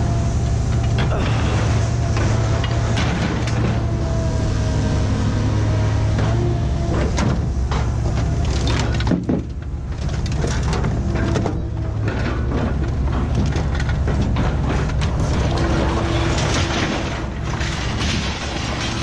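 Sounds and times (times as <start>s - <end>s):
heavy engine running: 0.0s - 19.0s
sharp knocks and clatters: 7.0s - 19.0s.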